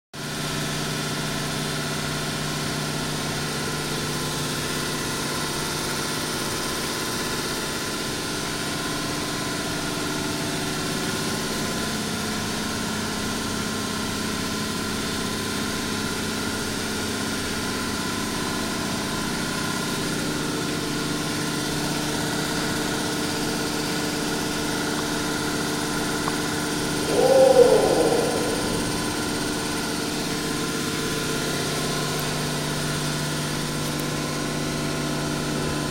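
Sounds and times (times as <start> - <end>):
electrical hum: 26.8 - 29.8.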